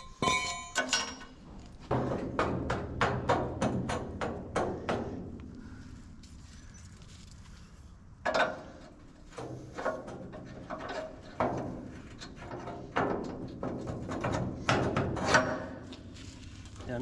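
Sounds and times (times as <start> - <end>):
knocks and clunks: 0.0 - 5.5, 8.2 - 16.2
low hum: 0.0 - 14.6.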